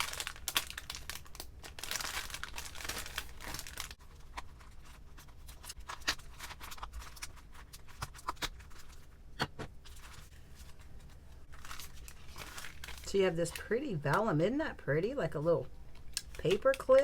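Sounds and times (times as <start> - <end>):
packaging and papers crinkling: 0.0 - 9.1, 9.8 - 14.0.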